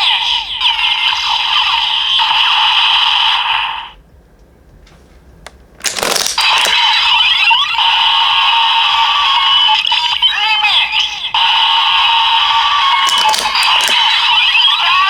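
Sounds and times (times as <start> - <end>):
plastic toy clatter: 5.8 - 6.9, 13.0 - 14.5
toy electronic sound effect: 5.8 - 7.8, 13.0 - 15.0.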